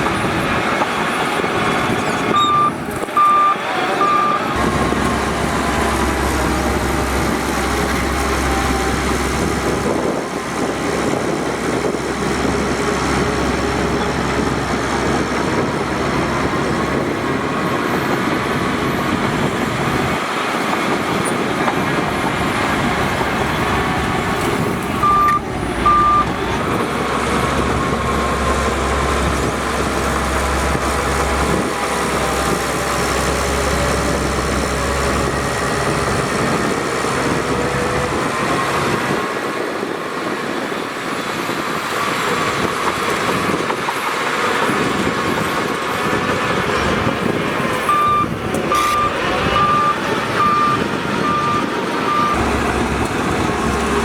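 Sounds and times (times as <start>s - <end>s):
bulldozer diesel engine running: 0.0s - 54.0s
short high beeps: 2.3s - 4.4s, 25.0s - 26.2s, 47.9s - 52.4s.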